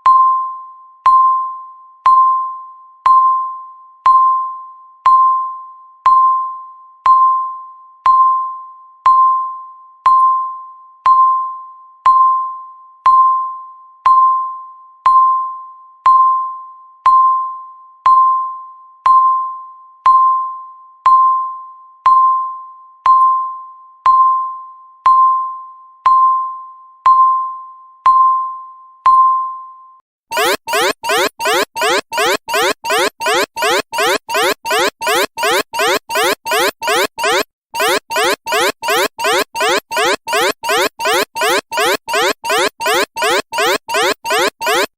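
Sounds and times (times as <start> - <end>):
alarm of rising sweeping tones: 30.3 - 44.9
electronic timer beeps: 30.3 - 44.9.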